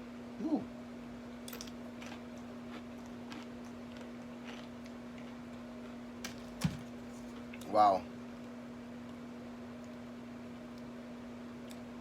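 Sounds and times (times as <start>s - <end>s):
steady low hum: 0.0s - 12.0s
tortilla chip crunching: 1.6s - 7.6s.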